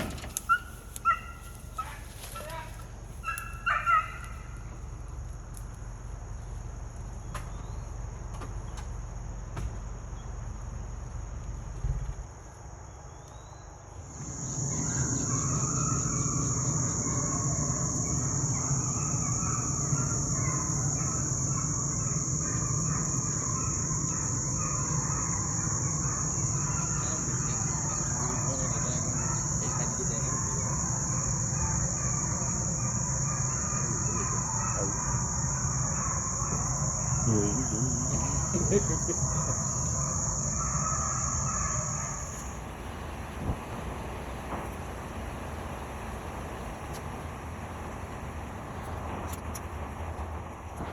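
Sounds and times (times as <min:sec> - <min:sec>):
thump: 0:00.0 - 0:00.4, 0:09.6 - 0:09.8
insects chirring: 0:00.0 - 0:50.9.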